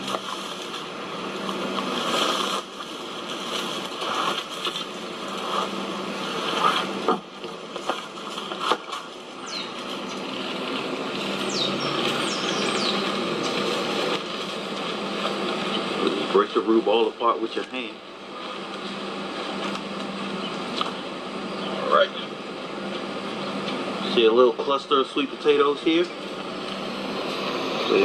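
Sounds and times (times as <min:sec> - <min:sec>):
soil rustling and scraping: 0:00.0 - 0:16.2.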